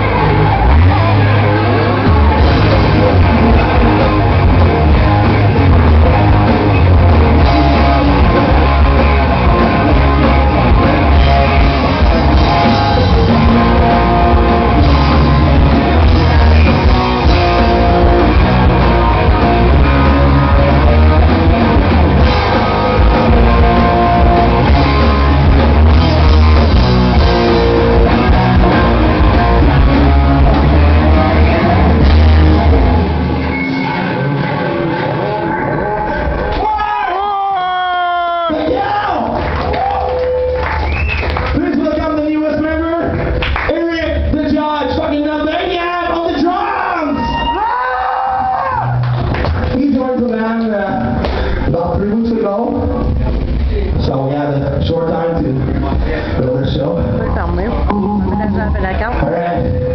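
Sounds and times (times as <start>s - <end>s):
bass guitar: 0.0s - 59.9s
drums: 0.0s - 59.9s
electric guitar: 0.0s - 59.9s.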